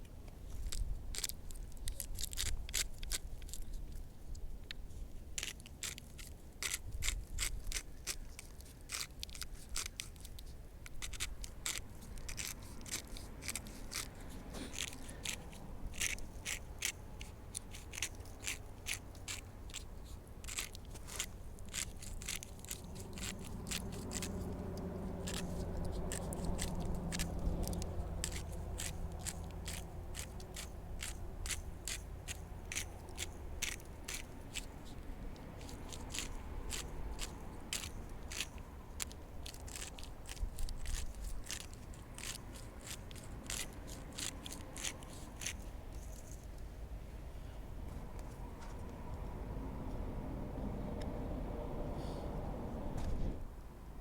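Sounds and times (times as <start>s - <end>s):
spice grinder crunching clicks: 0.7s - 3.6s, 14.7s - 34.7s, 35.6s - 46.4s.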